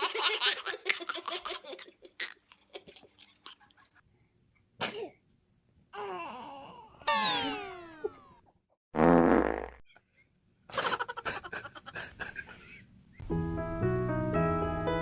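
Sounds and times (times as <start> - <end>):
baby sneezing: 4.8 - 5.2.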